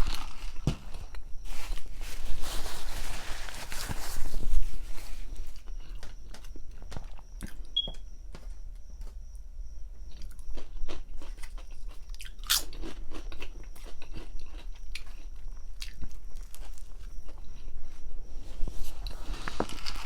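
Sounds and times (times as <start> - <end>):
chewing sandwich: 5.5 - 7.8, 10.0 - 17.7.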